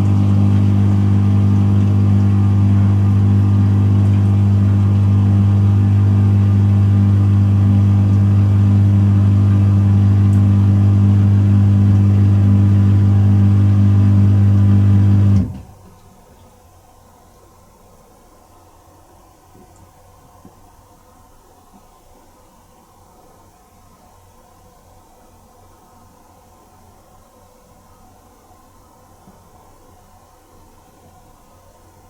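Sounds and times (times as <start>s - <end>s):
dishwasher pump humming: 0.0s - 15.9s.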